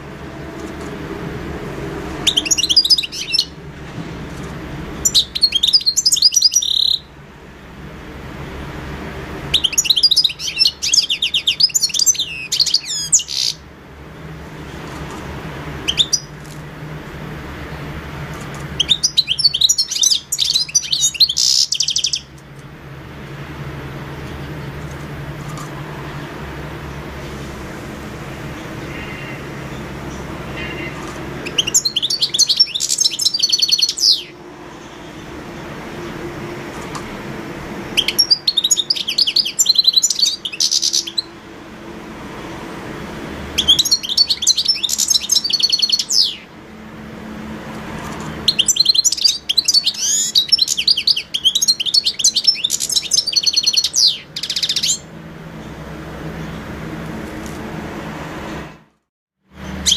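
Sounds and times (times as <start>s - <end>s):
goldfinch singing: 2.1s - 3.6s, 5.0s - 7.1s, 9.5s - 13.6s, 15.8s - 16.3s, 18.6s - 22.3s, 28.6s - 34.9s, 37.9s - 41.3s, 43.6s - 46.5s, 48.4s - 55.1s.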